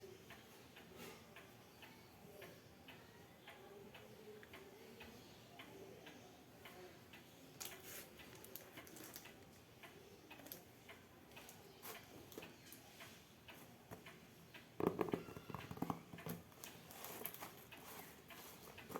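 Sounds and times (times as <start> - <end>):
packaging clicks and taps: 7.6 - 9.5, 14.8 - 18.9.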